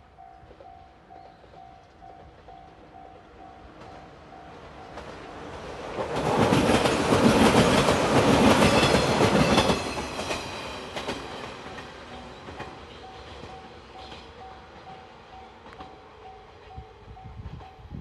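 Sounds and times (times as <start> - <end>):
level-crossing warning bell: 0.0 - 5.8, 8.6 - 18.0
train wheels clicking over rail joints: 0.4 - 16.8.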